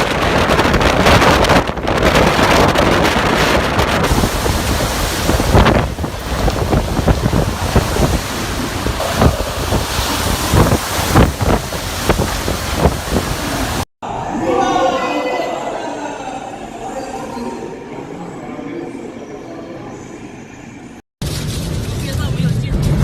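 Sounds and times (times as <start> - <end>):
strong wind gusts on microphone: 0.0 - 13.9.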